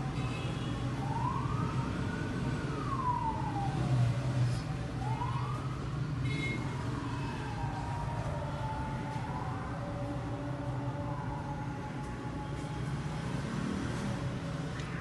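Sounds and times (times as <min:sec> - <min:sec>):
siren wailing: 0:01.0 - 0:13.1.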